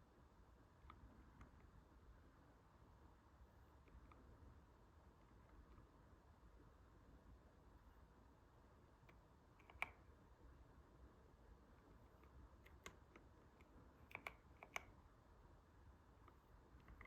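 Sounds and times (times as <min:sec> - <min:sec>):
mechanical keyboard key clicks: 0:09.6 - 0:10.0, 0:12.6 - 0:15.0.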